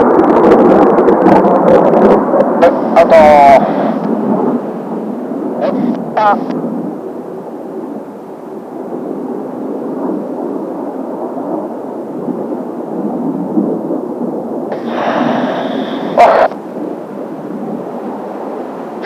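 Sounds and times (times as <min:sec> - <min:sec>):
sharp crackle: 0:00.0 - 0:11.0, 0:13.9 - 0:19.0
jet engine roar: 0:00.0 - 0:19.0.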